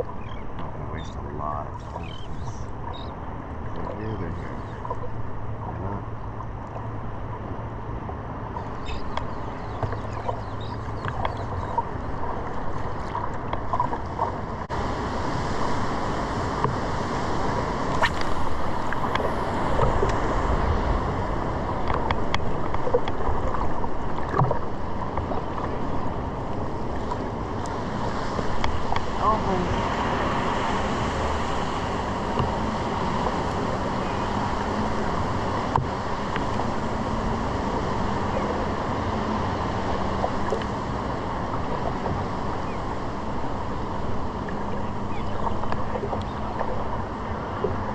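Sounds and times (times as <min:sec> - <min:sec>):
water lapping around surfboard: 0:00.0 - 0:47.9
short sharp splashes: 0:18.0 - 0:20.0.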